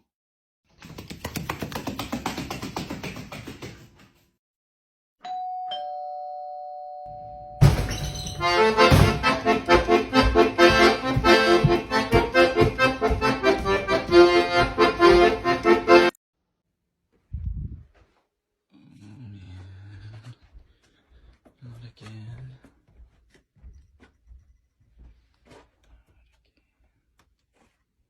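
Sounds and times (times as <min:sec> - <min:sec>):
ding-dong doorbell chime: 0:05.2 - 0:08.6
lively music with steady beat: 0:08.4 - 0:16.2.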